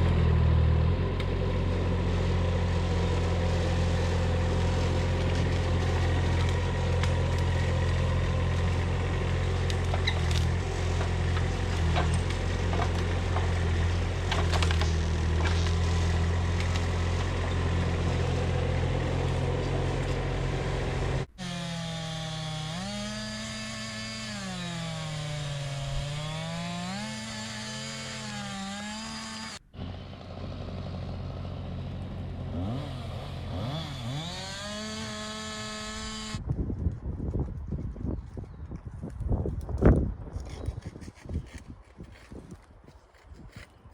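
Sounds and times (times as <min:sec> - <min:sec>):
small motor running: 0:02.8 - 0:30.1, 0:32.6 - 0:36.4.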